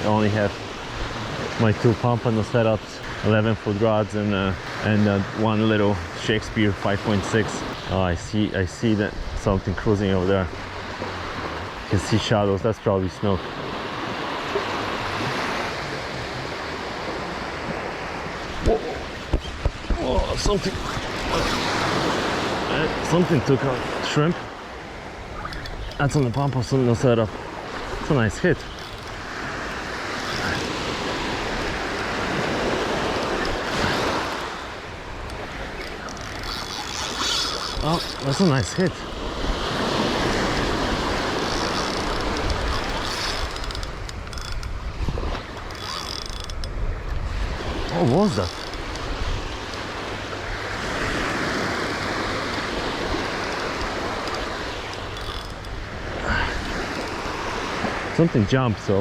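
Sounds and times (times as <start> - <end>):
waves breaking on beach: 0.0 - 59.0
wind on microphone: 15.9 - 58.1.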